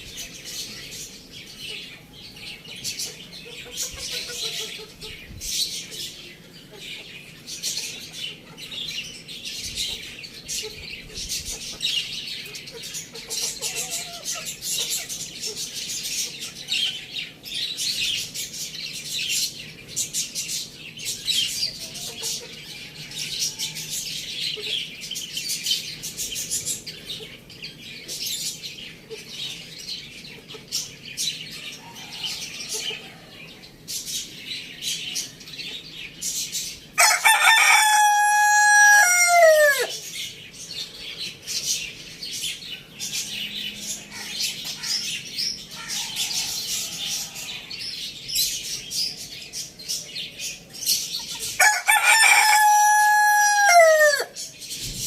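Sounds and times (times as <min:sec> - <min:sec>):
small birds chirping: 0:00.0 - 0:55.0
rooster crowing: 0:37.0 - 0:40.0, 0:51.6 - 0:54.4.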